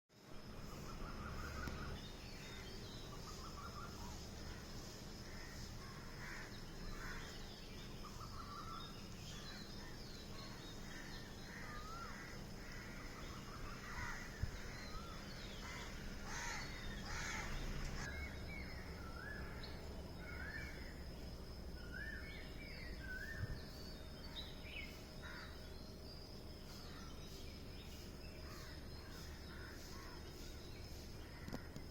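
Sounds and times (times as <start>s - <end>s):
birds chirping: 0.1s - 31.9s.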